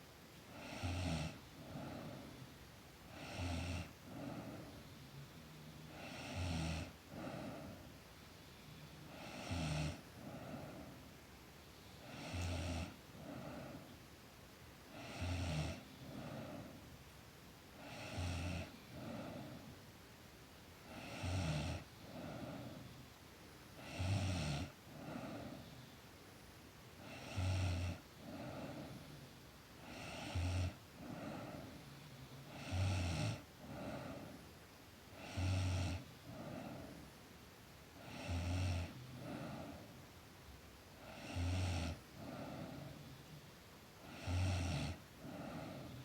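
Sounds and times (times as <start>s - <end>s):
girl snoring: 3.1s - 4.8s, 5.8s - 7.8s, 9.0s - 10.8s, 12.0s - 13.9s, 14.9s - 16.7s, 17.8s - 19.6s, 20.9s - 22.8s, 27.0s - 29.1s, 29.8s - 31.8s, 32.4s - 34.3s, 35.2s - 37.0s, 38.0s - 39.9s, 41.0s - 43.0s, 44.0s - 46.0s.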